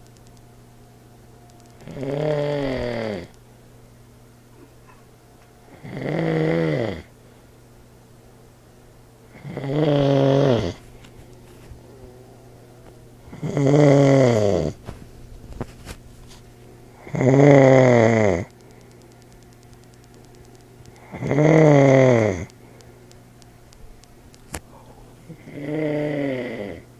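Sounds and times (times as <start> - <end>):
steady low hum: 0.0 - 26.9
man snoring loudly: 1.8 - 3.3, 5.7 - 7.1, 9.3 - 10.8, 13.3 - 14.8, 17.0 - 18.5, 21.1 - 22.5, 25.3 - 26.9.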